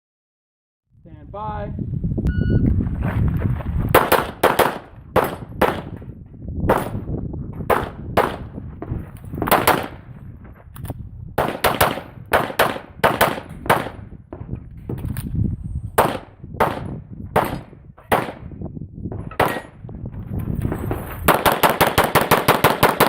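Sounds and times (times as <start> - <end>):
pistol shots: 3.9 - 6.0, 7.7 - 8.5, 9.4 - 10.0, 11.4 - 14.0, 16.0 - 18.5, 19.3 - 19.8, 21.3 - 23.0.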